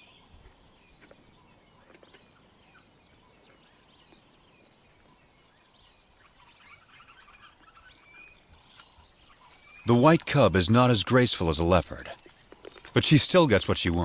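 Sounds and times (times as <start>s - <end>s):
high insect hiss: 0.0s - 14.0s
bird chirps and chattering calls: 5.7s - 10.1s.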